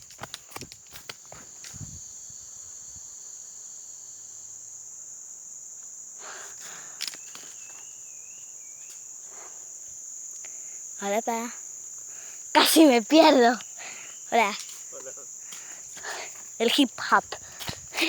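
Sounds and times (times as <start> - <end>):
insects chirring: 0.0 - 18.0
footsteps on forest floor: 14.5 - 18.0.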